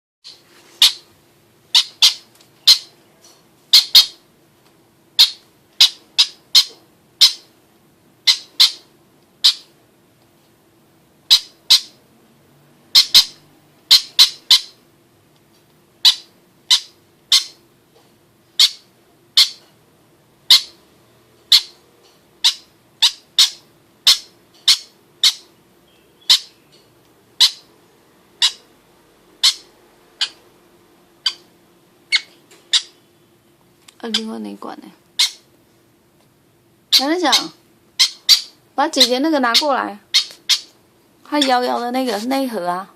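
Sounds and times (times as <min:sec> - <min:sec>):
faint steady hum: 0:00.3 - 0:42.9
chick begging calls: 0:29.4 - 0:30.4, 0:36.9 - 0:41.8.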